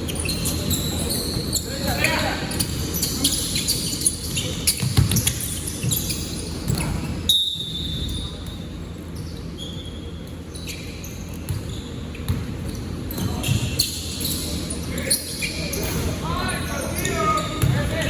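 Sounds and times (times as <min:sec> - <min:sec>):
voices in echoing hall: 0:00.0 - 0:07.4, 0:12.8 - 0:18.0
shoe squeaks: 0:00.0 - 0:18.0
basketball bouncing on court: 0:04.6 - 0:07.1, 0:11.3 - 0:14.0, 0:17.4 - 0:18.0.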